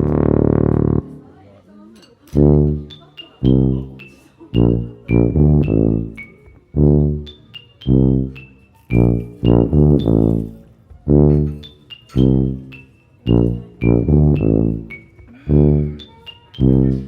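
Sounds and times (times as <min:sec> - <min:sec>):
repeating deep music notes: 0:00.0 - 0:01.2, 0:02.4 - 0:17.0
short high music notes: 0:02.4 - 0:17.0.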